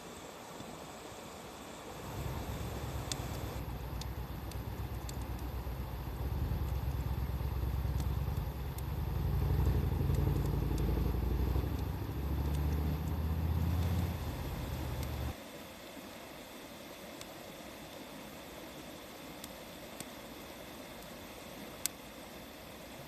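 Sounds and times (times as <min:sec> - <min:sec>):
vehicle engine running: 0:02.0 - 0:15.4
wood fire popping: 0:02.0 - 0:15.4.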